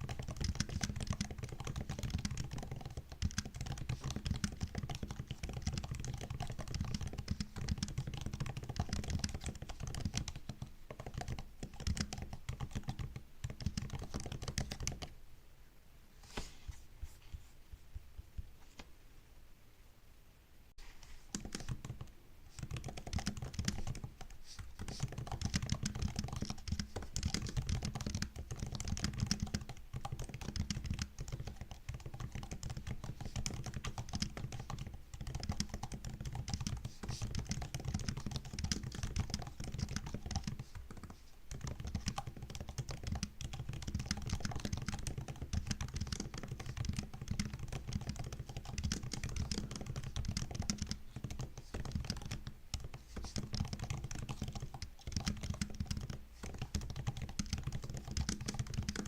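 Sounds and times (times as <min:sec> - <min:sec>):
fast laptop keyboard typing: 0:00.0 - 0:15.1, 0:21.3 - 0:59.0.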